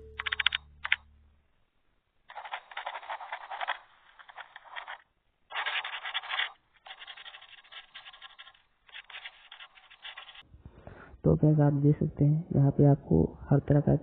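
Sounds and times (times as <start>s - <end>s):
scratchy crackling noise: 2.3s - 10.4s.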